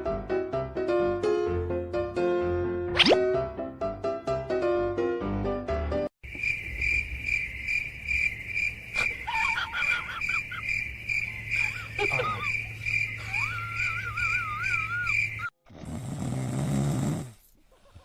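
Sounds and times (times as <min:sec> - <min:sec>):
piano music: 0:00.0 - 0:06.1
cricket chirping: 0:06.2 - 0:15.5
wavering whistled calls: 0:11.2 - 0:15.5.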